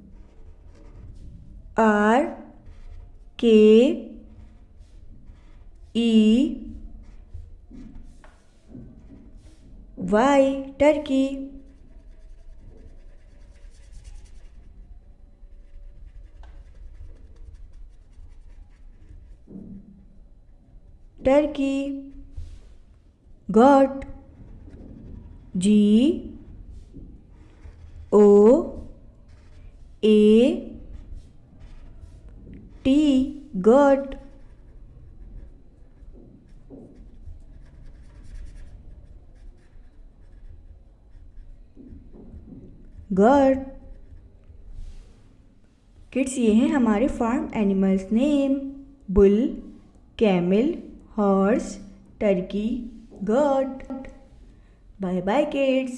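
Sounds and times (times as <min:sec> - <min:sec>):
pen scratching while writing: 0:00.0 - 0:01.4, 0:02.3 - 0:09.8, 0:10.5 - 0:20.1, 0:23.8 - 0:45.2
low steady hum: 0:00.0 - 0:39.0.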